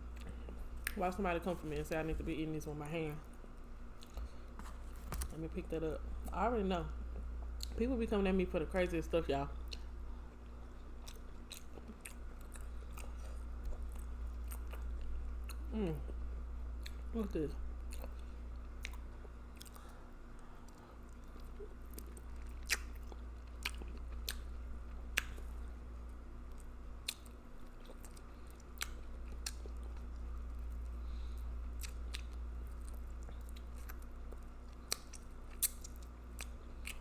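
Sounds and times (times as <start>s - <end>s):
chewing and lip smacking: 3.9s - 5.3s, 9.6s - 16.2s, 16.8s - 17.1s, 17.9s - 25.7s, 26.4s - 37.0s.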